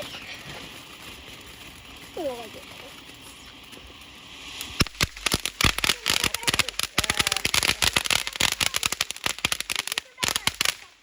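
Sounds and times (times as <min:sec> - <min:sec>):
firework hiss: 0:00.0 - 0:11.0
firecracker bangs: 0:04.6 - 0:11.0.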